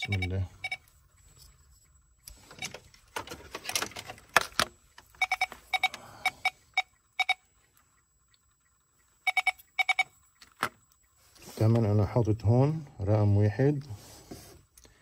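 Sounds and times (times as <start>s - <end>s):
short electronic beeps: 0.0s - 0.9s, 5.2s - 7.5s, 9.2s - 10.2s.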